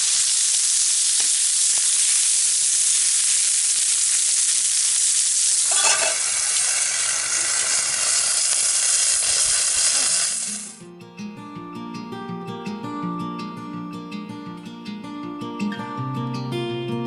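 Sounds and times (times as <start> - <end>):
meat sizzling loudly: 0.0 - 10.8.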